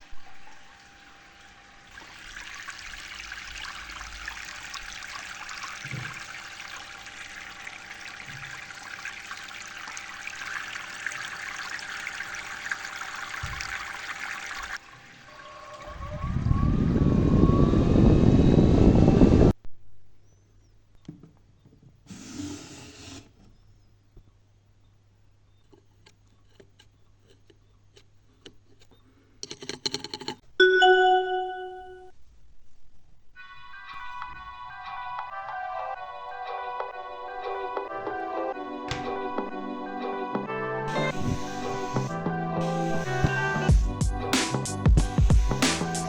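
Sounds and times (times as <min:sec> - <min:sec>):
water trickling and splashing: 0:00.0 - 0:16.4.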